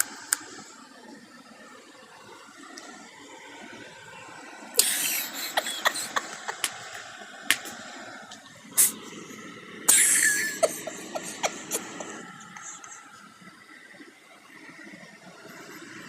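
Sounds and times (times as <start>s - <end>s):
dog sneezing: 4.8s - 6.9s, 9.9s - 12.8s.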